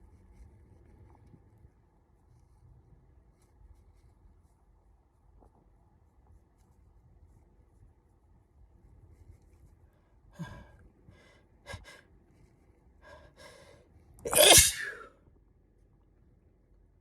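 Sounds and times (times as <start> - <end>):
short breaths: 13.0 - 15.1
loud sneeze: 14.3 - 15.1.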